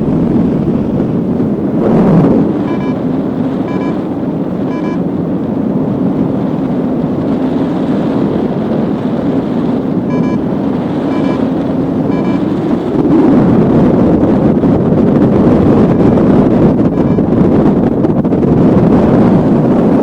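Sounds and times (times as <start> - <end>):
strong wind buffeting microphone: 0.0 - 20.0
variometer short beeps: 2.5 - 5.1, 10.0 - 12.8, 16.8 - 17.6.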